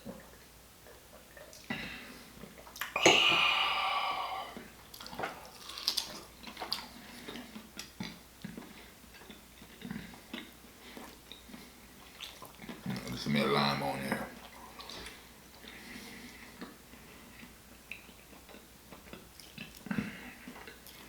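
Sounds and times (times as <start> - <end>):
loud sip of wine: 2.8 - 5.6
chewing smacks and clicks: 4.9 - 13.2, 17.4 - 21.0.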